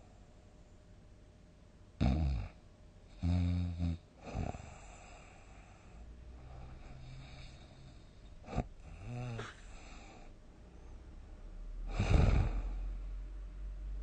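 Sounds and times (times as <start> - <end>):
person snoring loudly: 2.0 - 2.5, 11.9 - 12.9
short voiced breath: 9.3 - 10.2.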